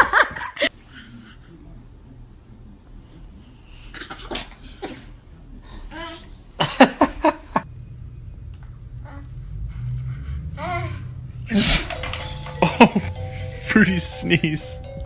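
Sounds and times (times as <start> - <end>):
person sneezing: 11.5 - 11.9.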